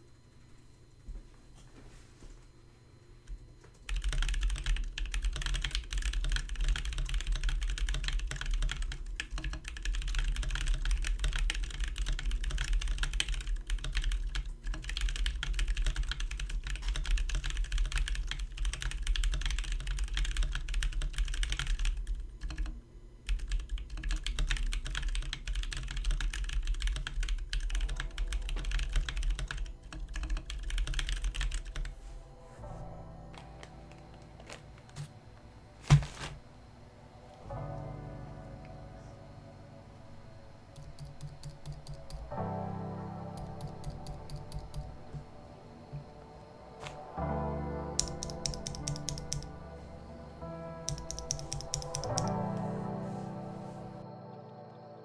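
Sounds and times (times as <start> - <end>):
fast mechanical keyboard typing: 3.3 - 32.0, 40.7 - 42.6, 43.2 - 46.2, 48.0 - 49.7, 50.8 - 52.6.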